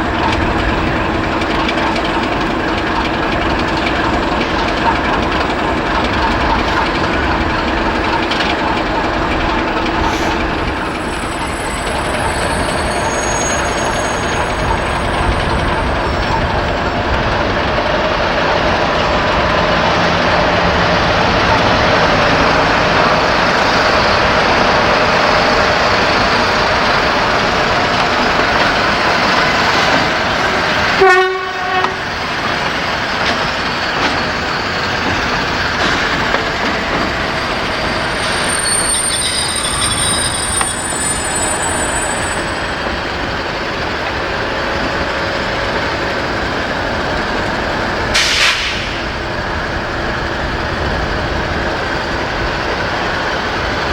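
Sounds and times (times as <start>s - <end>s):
train rumbling past: 0.0s - 53.9s
locomotive horn blast: 30.8s - 32.3s.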